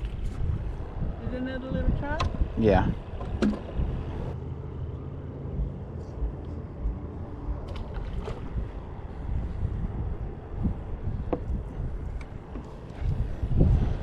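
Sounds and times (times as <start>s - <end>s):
low rumble: 0.0s - 14.0s
faint hum: 3.7s - 14.0s.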